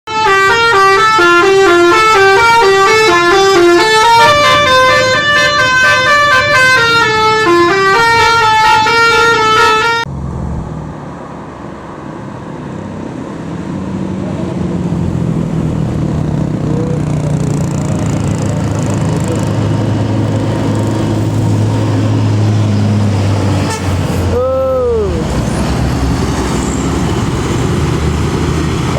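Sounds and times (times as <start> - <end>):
bus horn melody: 0.1 - 10.1, 23.5 - 24.4
large vehicle engine: 0.3 - 28.9.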